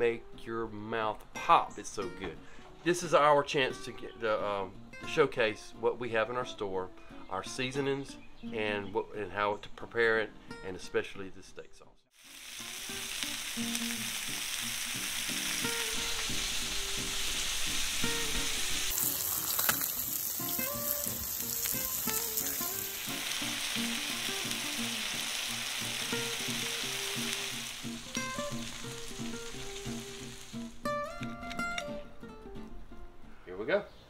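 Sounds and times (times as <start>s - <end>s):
plucked guitar-like music: 0.0s - 11.6s, 12.6s - 33.4s
food sizzling in frying: 12.2s - 31.1s.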